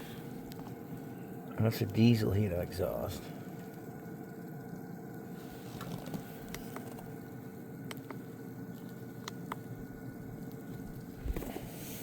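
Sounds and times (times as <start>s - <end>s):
low mechanical hum: 0.0s - 12.0s
small sharp clicks: 7.8s - 8.2s, 8.8s - 9.7s.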